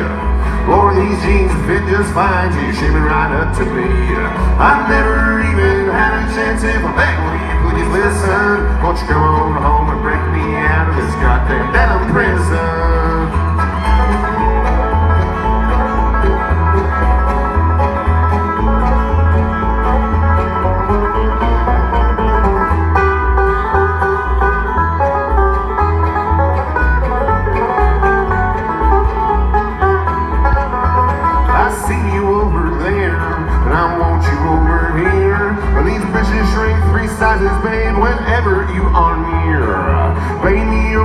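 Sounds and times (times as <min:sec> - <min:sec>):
acoustic guitar: 0:00.0 - 0:41.0
banjo: 0:00.0 - 0:41.0
upright bass: 0:00.0 - 0:41.0.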